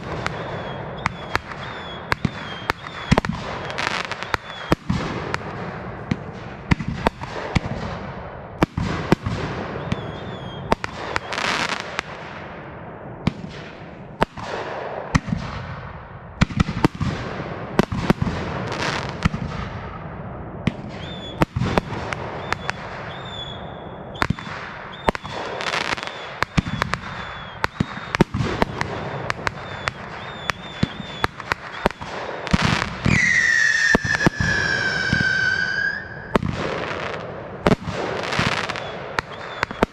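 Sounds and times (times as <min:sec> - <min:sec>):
shrill firework whistle: 0:00.0 - 0:04.8, 0:09.7 - 0:11.8, 0:20.9 - 0:36.4, 0:38.3 - 0:39.9
firework crackling: 0:00.0 - 0:12.6, 0:20.7 - 0:39.9
firework shells bursting: 0:24.2 - 0:39.9.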